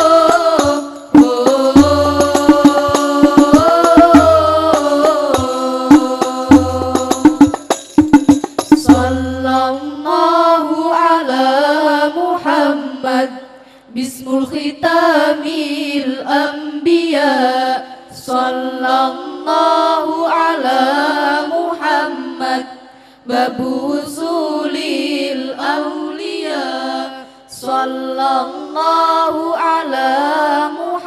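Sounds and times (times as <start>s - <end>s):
frame drum strikes: 0.0s - 9.5s
bass drum beats: 0.0s - 9.6s
voices singing: 0.0s - 31.0s.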